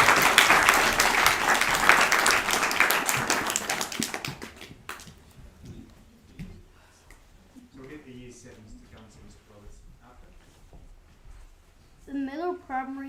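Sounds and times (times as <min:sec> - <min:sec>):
audience applauding: 0:00.0 - 0:05.2.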